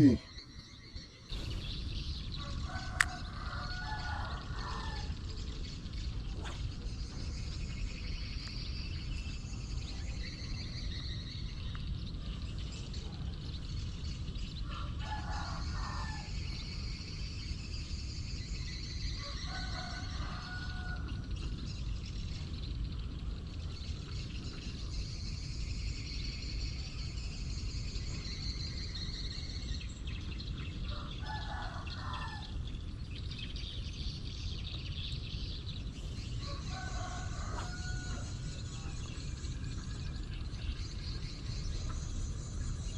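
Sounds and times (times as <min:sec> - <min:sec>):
low outdoor rumble: 0:00.0 - 0:42.9
distant roosters crowing: 0:01.4 - 0:05.5, 0:14.6 - 0:16.9, 0:19.1 - 0:21.4, 0:30.8 - 0:32.7, 0:35.8 - 0:39.4.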